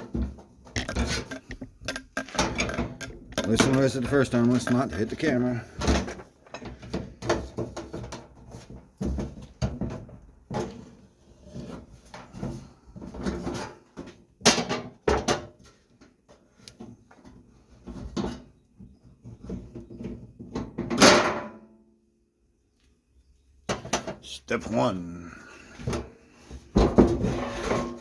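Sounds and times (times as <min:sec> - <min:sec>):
sheet metal parts knocking and clanking: 0:00.0 - 0:08.3
metal clatter: 0:00.7 - 0:05.3.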